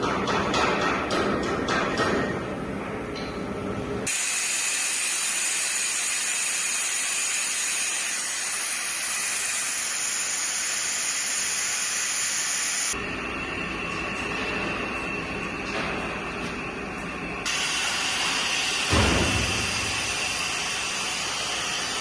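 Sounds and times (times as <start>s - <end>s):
pressurized gas hissing: 4.1s - 13.0s, 17.5s - 22.0s.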